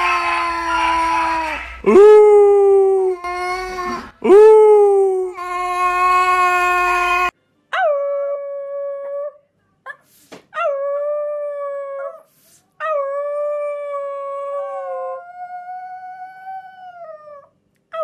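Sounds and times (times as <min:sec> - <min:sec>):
dog howling: 0:00.0 - 0:09.4.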